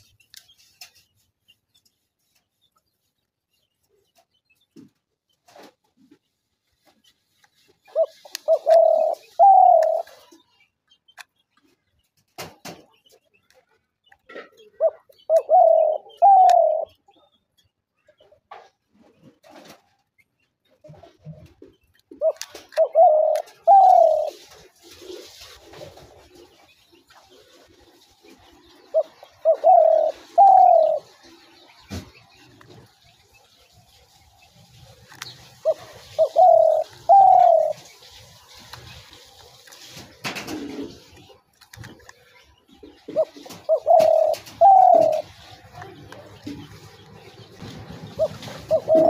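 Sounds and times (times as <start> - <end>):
dove cooing: 7.9 - 10.4, 14.3 - 17.1, 22.1 - 25.9, 28.8 - 31.2, 35.6 - 38.0, 42.8 - 46.9, 47.5 - 49.0.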